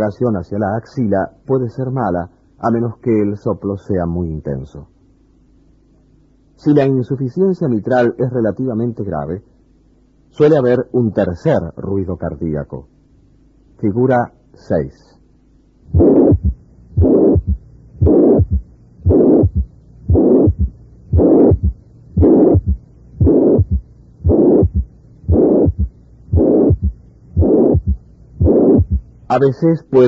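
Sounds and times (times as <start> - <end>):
heartbeat with blowing murmur: 15.9 - 29.2.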